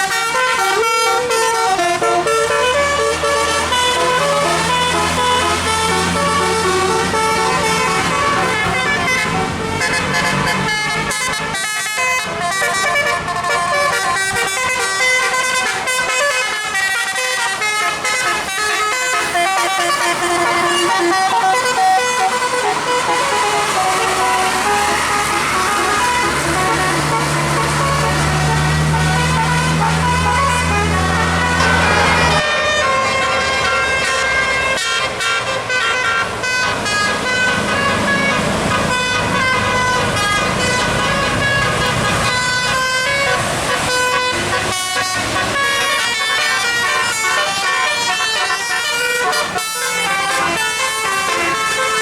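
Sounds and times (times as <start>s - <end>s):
musical air horn playing a tune: 0.0s - 52.0s.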